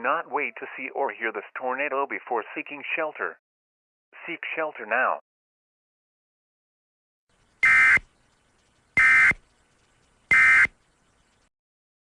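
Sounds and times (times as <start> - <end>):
two-tone data bursts: 7.6 - 8.1, 9.0 - 9.4, 10.3 - 10.8.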